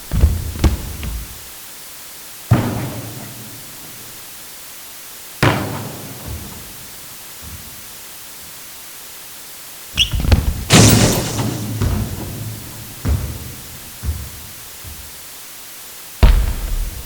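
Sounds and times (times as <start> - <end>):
basketball thud with hall echo: 0.0 - 1.5, 2.5 - 4.2, 5.4 - 8.0, 10.0 - 15.2, 16.2 - 17.0.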